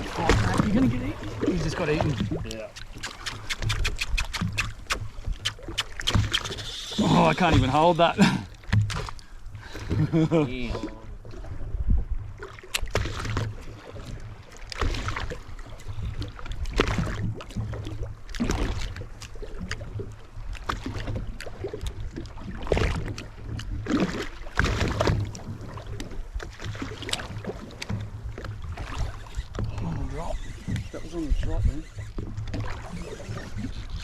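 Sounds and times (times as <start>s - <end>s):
wind gusts: 0.0s - 12.4s.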